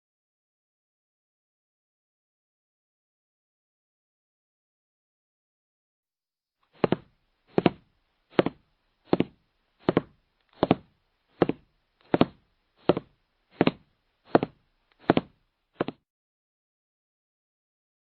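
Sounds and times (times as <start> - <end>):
slow walking footsteps: 6.7 - 16.0.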